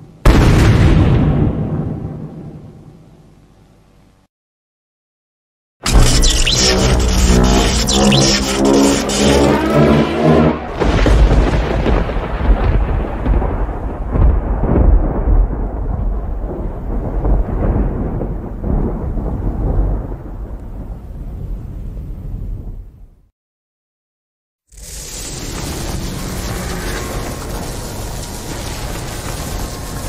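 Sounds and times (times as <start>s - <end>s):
pitched tone: 5.9s - 10.6s.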